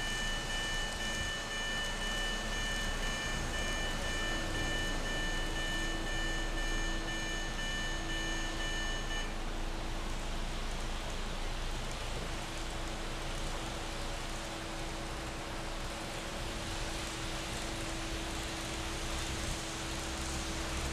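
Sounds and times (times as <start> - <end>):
level crossing alarm beeping: 0.0 - 9.4.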